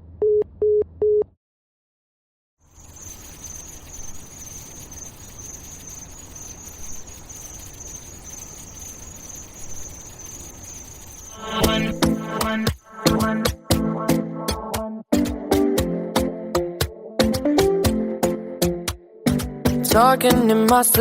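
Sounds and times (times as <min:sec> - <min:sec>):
high-pitched insect chorus: 0:02.6 - 0:13.4
pitched music: 0:11.4 - 0:21.0.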